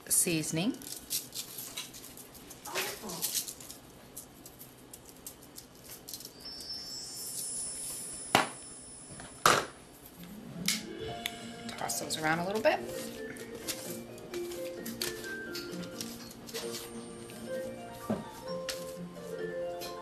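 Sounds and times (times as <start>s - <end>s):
seasoning shaker rattling: 0.8s - 7.5s
faint high steady tone: 6.3s - 9.4s.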